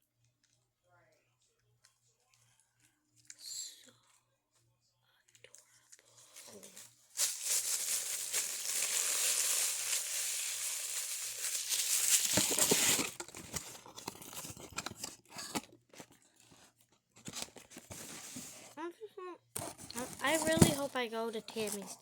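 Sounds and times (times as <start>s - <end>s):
wrapper crinkling and clicking: 5.4s - 16.5s
packaging tearing and rustling: 6.6s - 16.2s.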